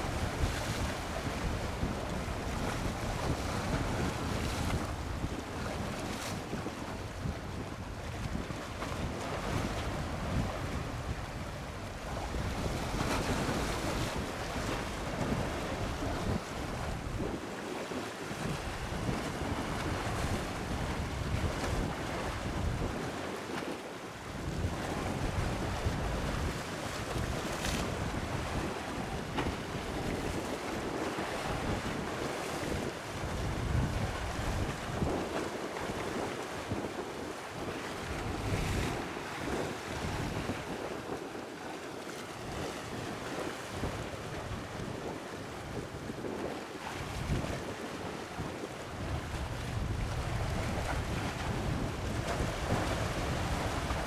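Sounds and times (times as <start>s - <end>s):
sea waves: 37.4s - 43.1s
wind gusting on microphone: 49.1s - 54.0s.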